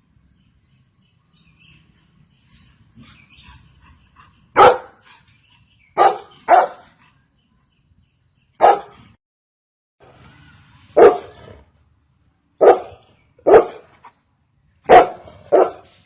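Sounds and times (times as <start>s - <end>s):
dog barking: 4.5s - 5.0s, 6.0s - 7.0s, 8.6s - 9.0s, 11.0s - 11.4s, 12.6s - 13.9s, 14.9s - 15.9s.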